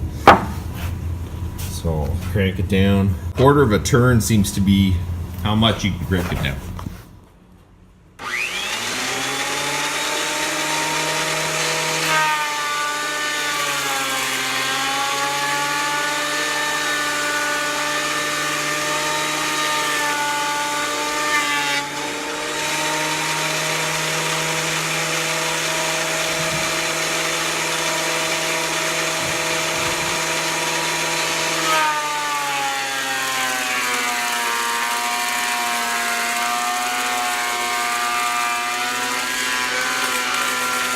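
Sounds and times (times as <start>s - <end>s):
planer cutting boards: 0.2s - 1.0s, 8.2s - 40.9s
thickness planer motor whine: 8.2s - 40.9s.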